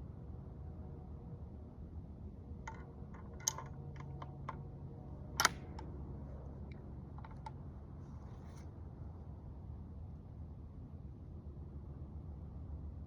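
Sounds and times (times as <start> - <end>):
rifle metallic clicks and knocks: 2.7 - 4.7, 5.4 - 5.9, 7.2 - 7.6.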